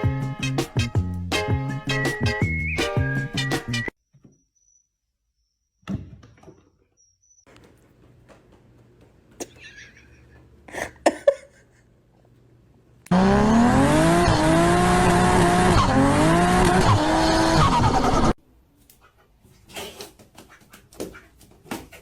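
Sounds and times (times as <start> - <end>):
car engine revving: 13.1 - 18.4.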